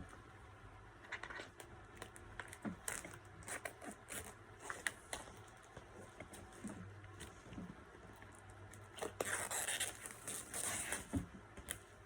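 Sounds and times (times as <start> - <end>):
plastic wrapping crinkling: 8.8 - 11.1.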